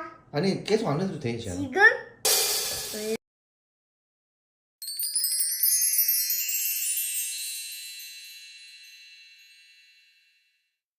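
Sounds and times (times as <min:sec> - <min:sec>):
shimmering bell chime cascade: 0:04.8 - 0:10.7.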